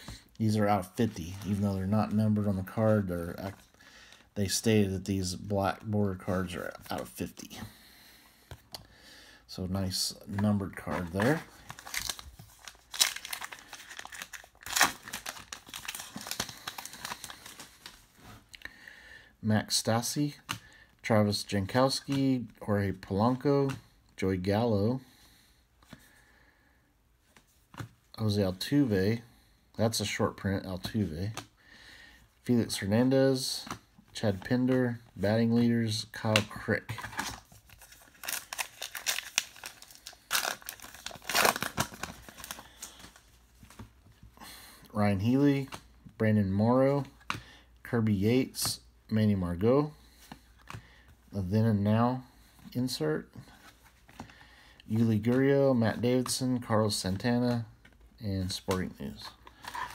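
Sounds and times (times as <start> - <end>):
cards being handled: 0.8 - 3.8, 10.2 - 18.6, 36.2 - 44.3
wrapper crinkling and tearing: 10.8 - 18.0, 37.0 - 43.8.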